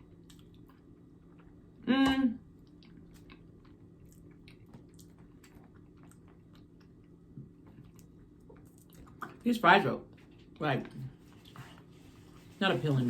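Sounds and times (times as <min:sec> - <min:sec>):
person chewing food: 0:00.0 - 0:01.8, 0:02.5 - 0:09.4
low steady hum: 0:00.0 - 0:13.0.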